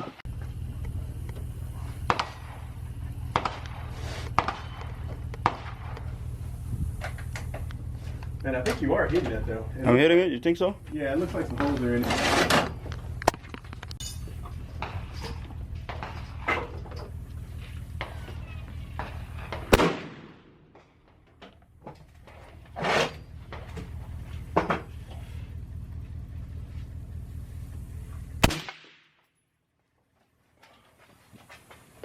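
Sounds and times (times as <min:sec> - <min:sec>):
steady low hum: 0:00.0 - 0:32.0
gunshots indoors: 0:19.7 - 0:20.7, 0:28.4 - 0:29.2.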